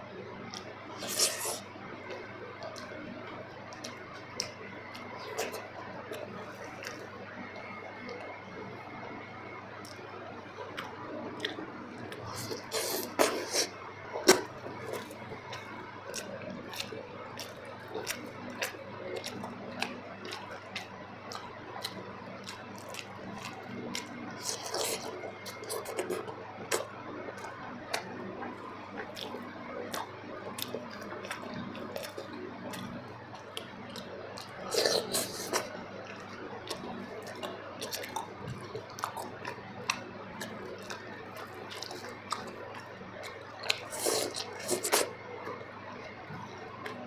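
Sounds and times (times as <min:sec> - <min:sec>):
wet chewing and lip smacks: 0:09.8 - 0:47.0.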